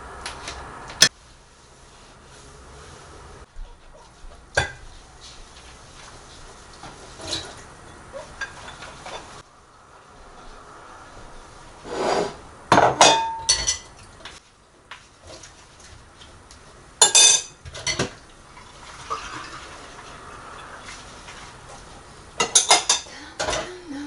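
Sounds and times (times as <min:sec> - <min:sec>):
dishes and cutlery clattering: 0:07.2 - 0:09.4, 0:12.8 - 0:14.1, 0:17.0 - 0:18.2, 0:22.4 - 0:23.7.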